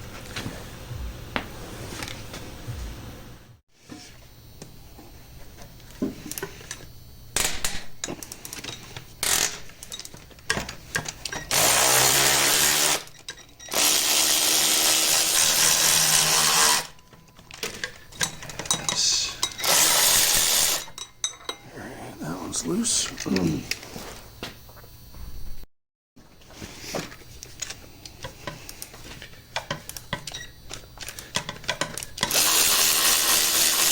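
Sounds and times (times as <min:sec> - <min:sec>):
power tool spinning out bolts: 0:07.4 - 0:21.0, 0:29.6 - 0:33.9
tools clicking and knocking: 0:17.1 - 0:21.6, 0:27.5 - 0:32.9.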